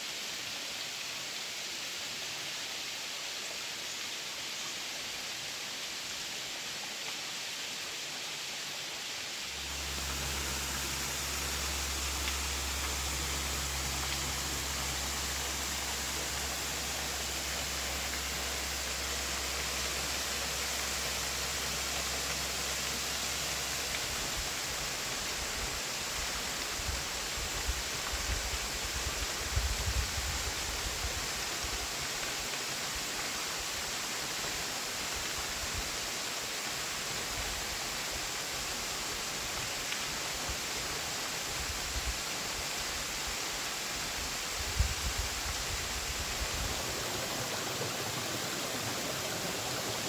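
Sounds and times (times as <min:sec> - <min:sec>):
waterfall rushing: 0:09.2 - 0:29.5, 0:30.3 - 0:50.0.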